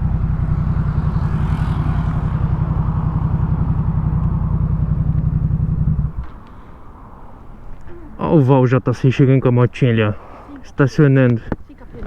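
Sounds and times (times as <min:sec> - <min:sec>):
motorcycle engine running: 0:00.0 - 0:08.1.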